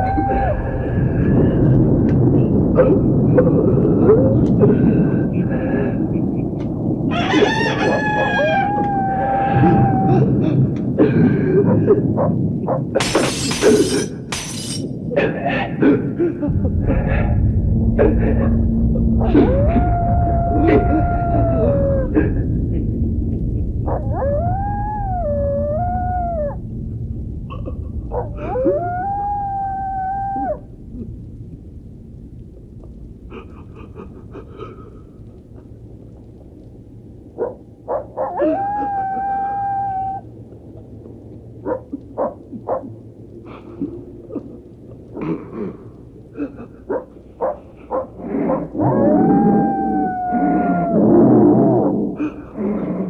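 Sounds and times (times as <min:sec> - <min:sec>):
wolf howling: 0:00.0 - 0:01.9, 0:07.0 - 0:10.4, 0:16.9 - 0:22.8, 0:23.7 - 0:26.9, 0:27.5 - 0:30.9, 0:37.4 - 0:40.3, 0:46.9 - 0:53.0
eerie moaning: 0:00.0 - 0:47.0, 0:47.7 - 0:53.0
low rumble: 0:00.0 - 0:53.0
glass shattering: 0:13.0 - 0:15.0
steady low hum: 0:13.0 - 0:38.0.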